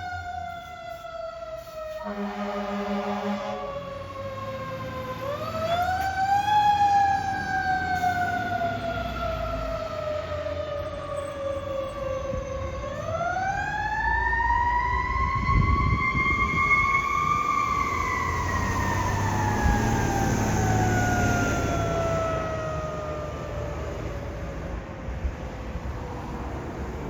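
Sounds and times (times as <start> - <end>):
mechanical siren wailing: 0.0 - 24.6
truck engine rumbling: 0.4 - 27.0
air horn blast: 2.0 - 3.8.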